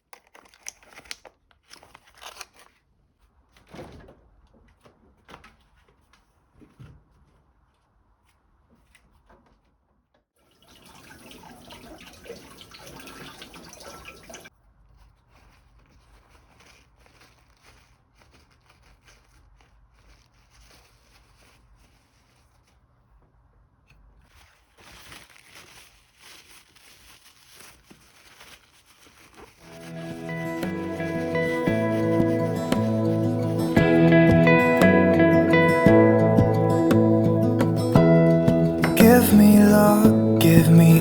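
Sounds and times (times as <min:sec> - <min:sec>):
water running from tap: 0:10.5 - 0:14.5
faint handling noises: 0:14.6 - 0:41.0.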